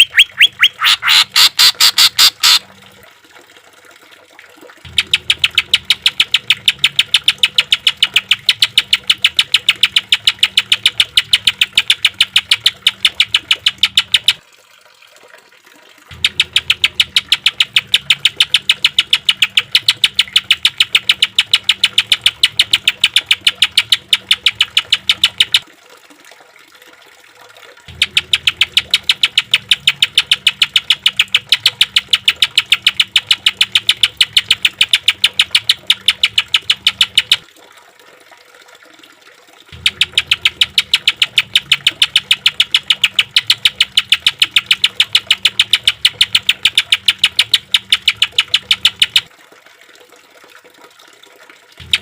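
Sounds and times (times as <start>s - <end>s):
bird song of sharp repeated notes: 0.0s - 2.6s, 4.9s - 14.4s, 16.1s - 25.6s, 27.9s - 37.4s, 39.8s - 49.3s, 51.8s - 52.0s.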